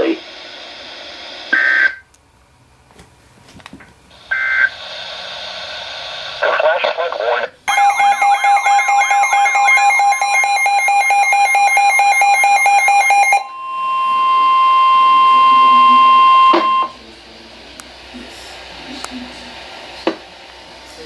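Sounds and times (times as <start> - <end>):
steady alert tone: 7.7 - 17.0
warbling electronic alarm: 7.7 - 17.0.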